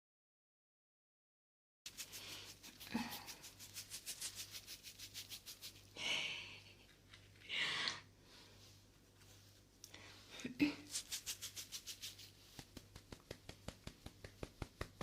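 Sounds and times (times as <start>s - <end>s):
fast faint strokes: 1.9s - 6.0s, 10.8s - 15.0s.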